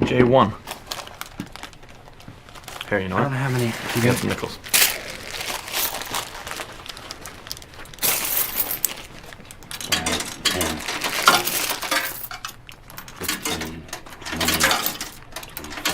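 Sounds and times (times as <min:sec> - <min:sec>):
coins clinking into coin slot: 0:08.0 - 0:09.1, 0:09.7 - 0:15.9.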